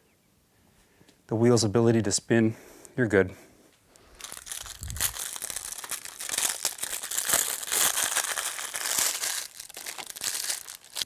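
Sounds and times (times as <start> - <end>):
plastic packaging crinkling: 4.0 - 11.0.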